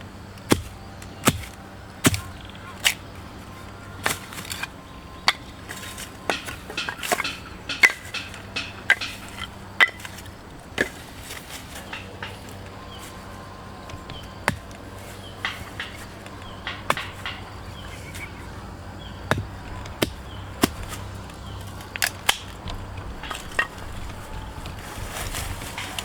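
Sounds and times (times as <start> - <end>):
low background hum: 0.0 - 26.0
sharp clicks and knocks: 4.0 - 13.2, 13.8 - 18.6.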